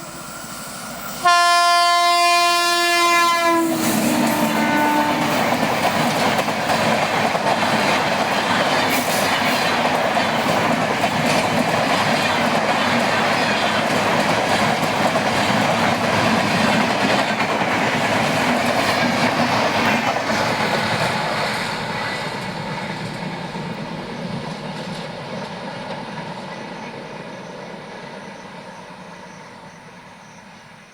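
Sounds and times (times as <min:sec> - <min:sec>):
train wheels clattering: 0:03.6 - 0:26.9.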